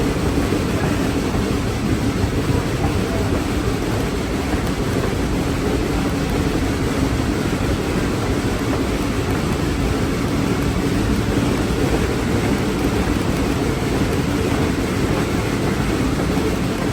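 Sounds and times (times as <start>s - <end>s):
train car rattling: 0.0s - 16.9s
train wheels on rails: 0.0s - 16.9s.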